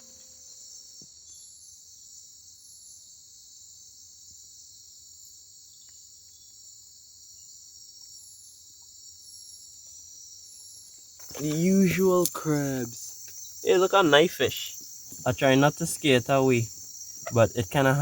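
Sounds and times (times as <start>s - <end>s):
higher short insect chirp: 0.0s - 3.8s, 9.2s - 18.0s
crickets and insects chorus: 0.0s - 18.0s.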